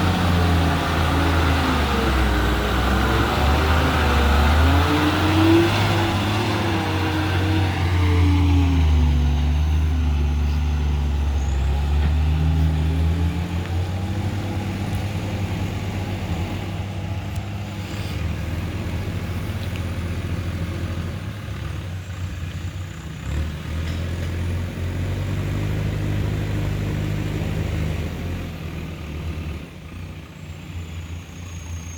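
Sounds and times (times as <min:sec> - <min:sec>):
heavy diesel engine under load: 0:00.0 - 0:31.9.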